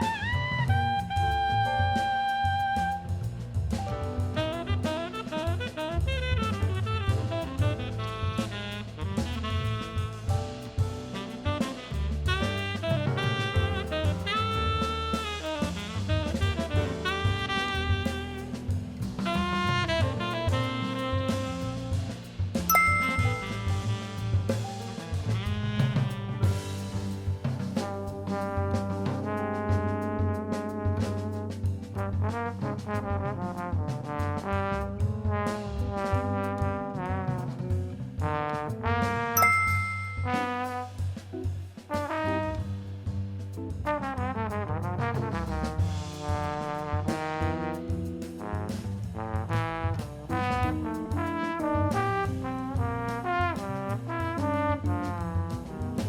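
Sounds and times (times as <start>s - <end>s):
bass and drums: 0.0s - 56.0s
jazz horn melody: 0.0s - 56.0s
saxophone melody: 0.8s - 3.0s, 4.4s - 10.2s, 11.2s - 18.6s, 19.4s - 22.0s, 22.7s - 24.6s.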